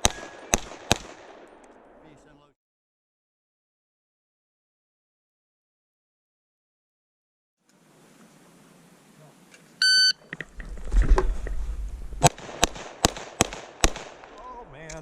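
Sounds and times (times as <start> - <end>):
pistol shots: 0.0 - 2.0, 12.2 - 14.4
shot timer beep: 9.8 - 10.2.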